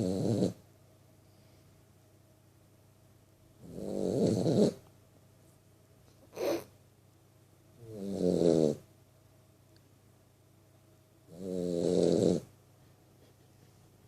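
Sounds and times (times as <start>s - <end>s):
puppy snoring: 0.0s - 0.6s, 3.6s - 4.8s, 6.3s - 6.7s, 7.8s - 8.9s, 11.2s - 12.6s.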